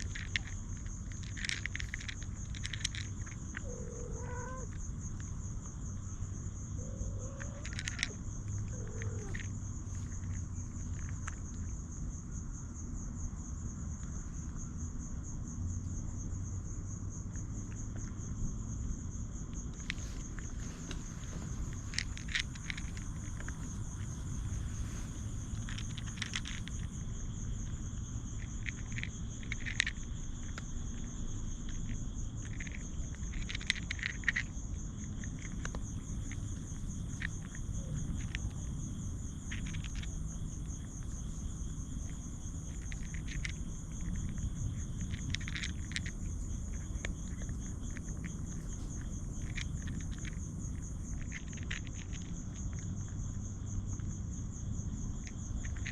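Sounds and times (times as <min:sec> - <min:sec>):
night insects trilling: 0:00.0 - 0:55.9
short rustles and clicks: 0:19.8 - 0:26.9.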